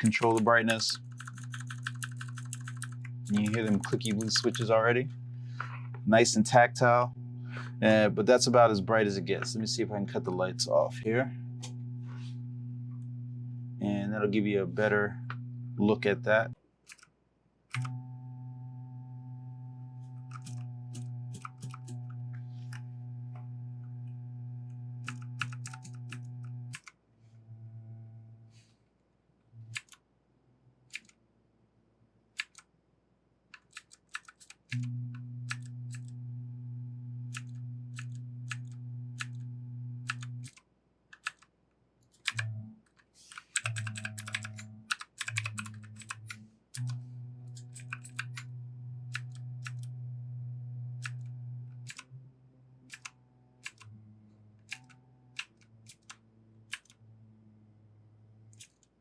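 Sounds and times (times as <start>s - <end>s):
low steady hum: 0.0s - 16.6s, 17.8s - 28.7s, 34.8s - 40.5s, 43.7s - 58.5s
clicky mechanical keyboard presses: 0.1s - 4.8s, 42.2s - 47.0s.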